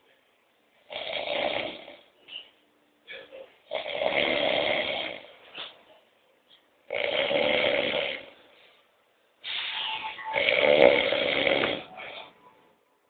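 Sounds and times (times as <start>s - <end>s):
man snoring loudly: 0.9s - 2.0s, 3.7s - 5.3s, 6.9s - 8.4s, 10.4s - 11.9s.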